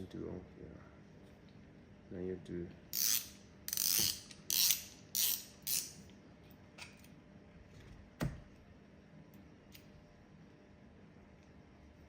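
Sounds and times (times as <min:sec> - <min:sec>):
ratchet clicking: 0:03.0 - 0:06.0.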